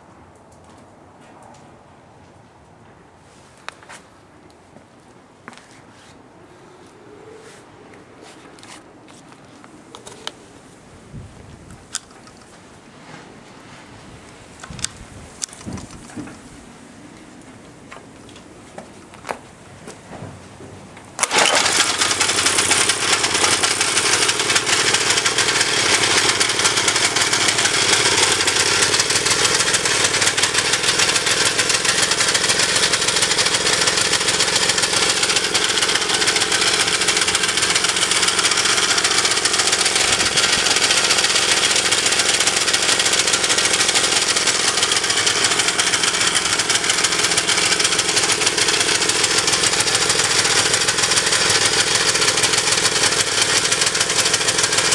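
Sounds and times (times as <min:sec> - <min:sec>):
small tiller engine running: 0:21.2 - 0:54.9.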